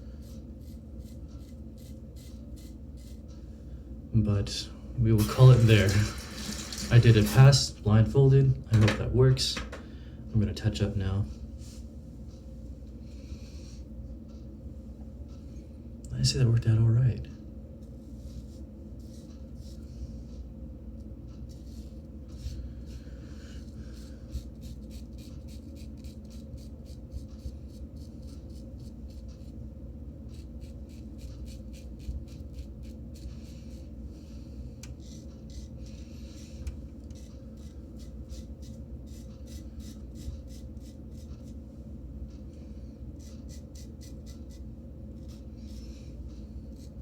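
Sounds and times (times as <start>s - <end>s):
low steady hum: 0.0s - 47.0s
razor scraping stubble: 0.3s - 3.2s, 23.6s - 29.6s, 30.3s - 33.8s, 34.9s - 41.6s, 43.2s - 45.9s.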